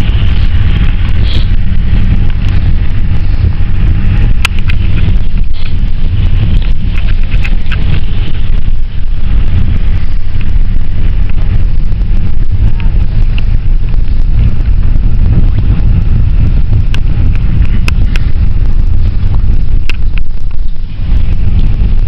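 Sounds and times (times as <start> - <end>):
sharp rattles: 0.0 - 22.0
van engine and road noise: 0.0 - 22.0.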